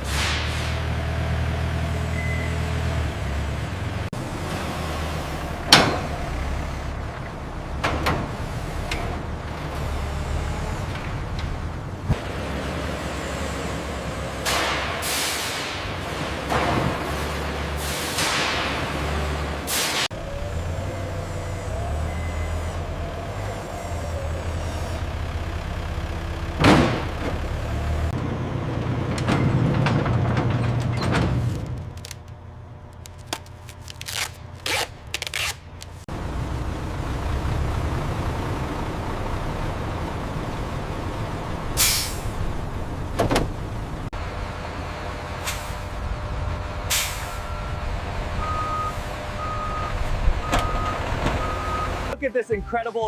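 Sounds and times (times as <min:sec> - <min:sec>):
heavy machinery rumble: 0:00.0 - 0:52.2
hiss of released air: 0:15.0 - 0:15.8, 0:41.8 - 0:42.3, 0:46.9 - 0:47.4.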